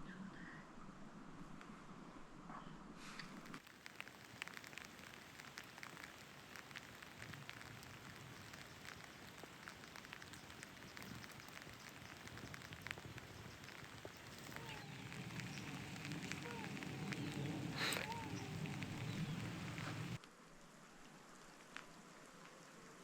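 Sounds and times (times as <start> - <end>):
light rain falling: 3.2 - 20.2
raindrops ticking: 3.4 - 20.2.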